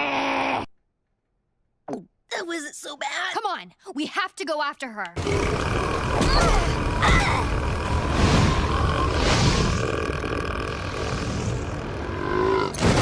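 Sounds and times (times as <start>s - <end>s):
cartoon character burping: 5.2s - 7.7s.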